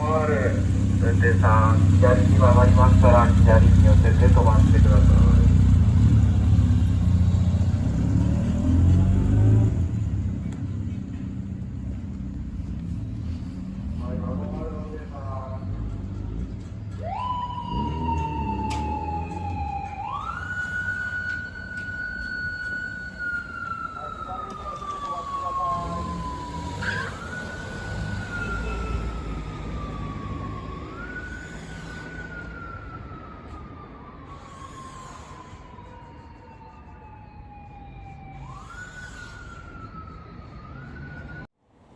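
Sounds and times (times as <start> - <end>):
police siren wailing: 0.0 - 10.2, 16.7 - 41.5
vehicle engine running: 0.0 - 17.1
engine and road rumble: 0.0 - 41.9.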